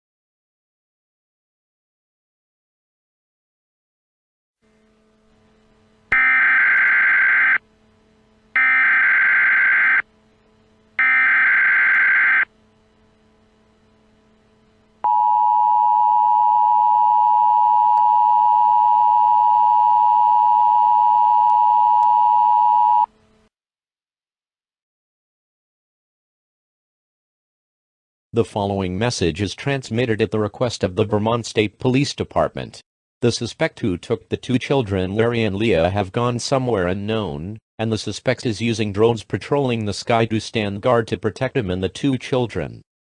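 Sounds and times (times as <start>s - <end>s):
two-tone attention signal: 6.1s - 7.6s, 8.6s - 10.0s, 11.0s - 12.5s.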